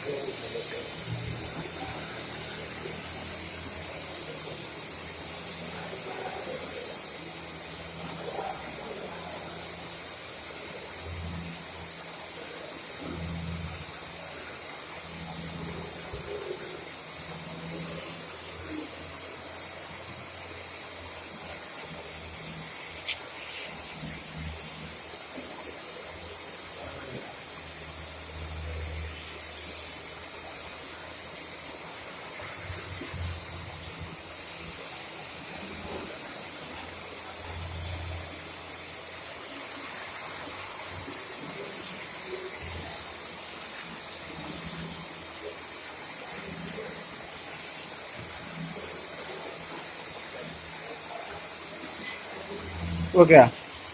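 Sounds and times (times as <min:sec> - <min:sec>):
torch flame hissing: 0:00.0 - 0:53.9.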